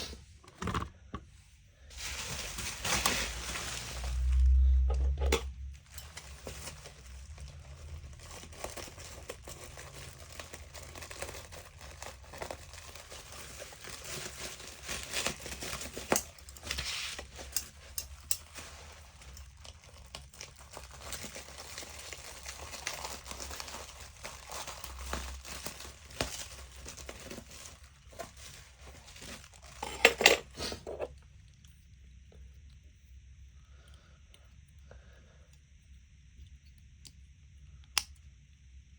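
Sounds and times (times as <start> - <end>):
packaging crinkling and tearing: 1.9 - 4.9, 5.7 - 31.0.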